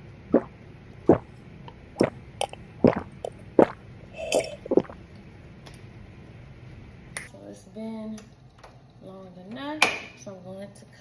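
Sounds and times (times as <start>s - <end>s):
person gulping water: 0.3s - 1.3s, 2.0s - 5.0s.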